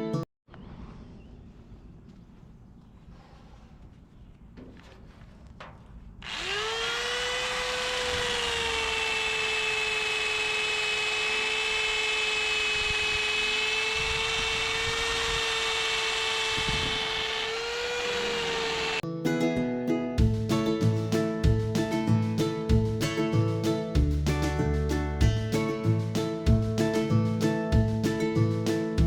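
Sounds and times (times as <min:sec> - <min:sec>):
power tool whining: 0:06.2 - 0:19.0.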